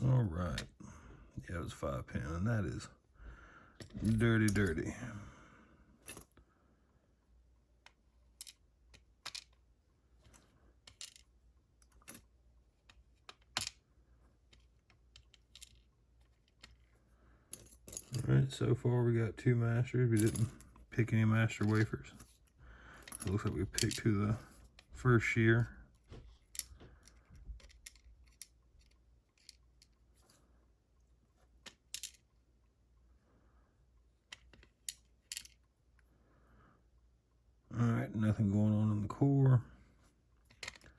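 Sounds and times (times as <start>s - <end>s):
small metal parts clicking: 7.8s - 9.6s, 10.3s - 12.3s, 14.5s - 16.9s, 26.4s - 30.0s, 31.6s - 32.2s, 34.3s - 35.6s, 40.5s - 40.9s.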